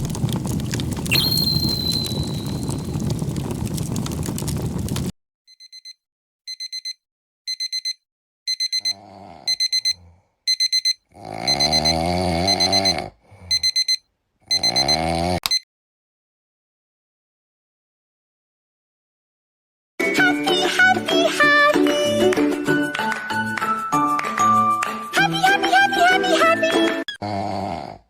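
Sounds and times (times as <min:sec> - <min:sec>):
digital alarm clock beeping: 0:01.1 - 0:02.6, 0:05.5 - 0:15.6.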